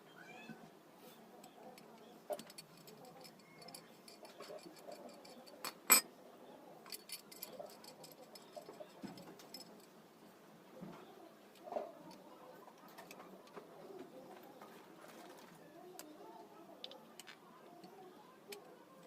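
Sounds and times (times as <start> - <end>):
hard objects clinking: 2.3 - 6.1.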